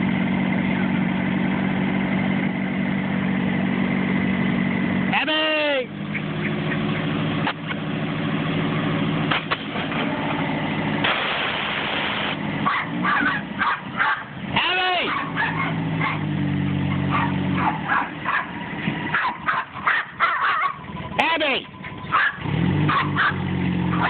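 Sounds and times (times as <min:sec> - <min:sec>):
truck engine running: 0:00.0 - 0:24.0
dog barking: 0:12.6 - 0:14.4, 0:15.0 - 0:16.3, 0:16.9 - 0:20.9, 0:22.1 - 0:24.0
dog whining: 0:19.2 - 0:20.9.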